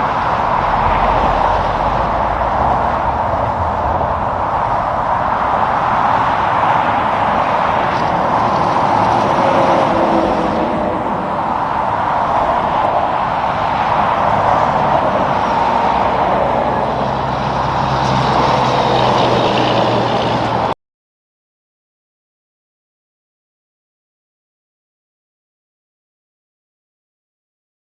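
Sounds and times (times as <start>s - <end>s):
low engine hum: 0.0s - 20.7s
road traffic passing: 0.0s - 20.8s.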